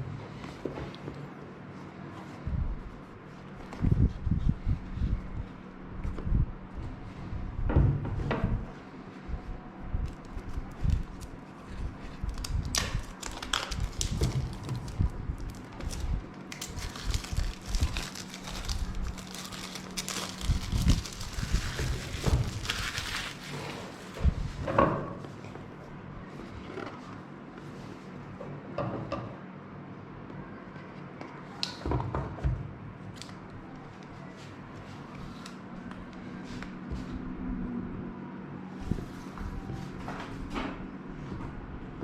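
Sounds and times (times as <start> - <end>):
plastic film crinkling: 10.0 - 24.0
cardboard rustling: 10.1 - 24.2.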